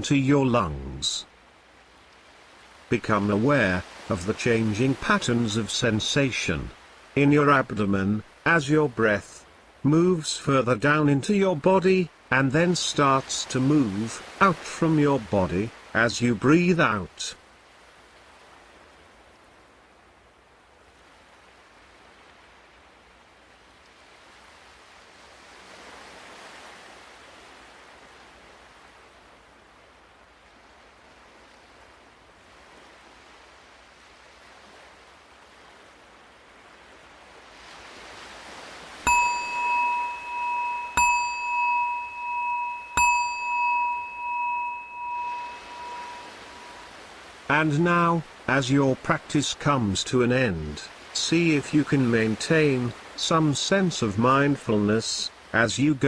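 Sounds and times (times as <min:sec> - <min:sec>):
ocean waves washing: 0:00.0 - 0:56.0
meditation bell ringing: 0:39.0 - 0:47.0.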